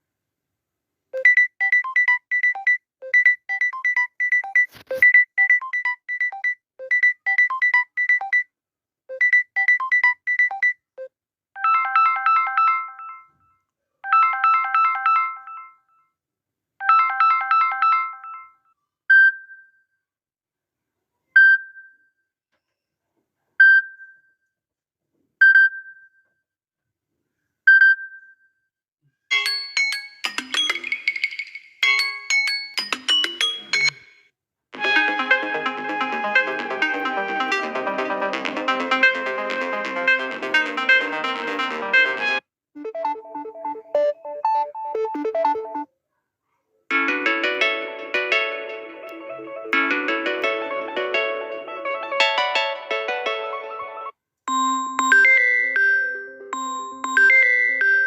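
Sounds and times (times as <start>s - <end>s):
short phone beep: 1.2s - 8.5s
electronic ringtone melody: 11.6s - 13.4s, 14.1s - 15.9s, 16.8s - 18.6s, 34.8s - 45.9s, 46.9s - 58.0s
bell-like ringtone notes: 29.3s - 34.2s, 34.8s - 45.9s, 54.5s - 58.0s.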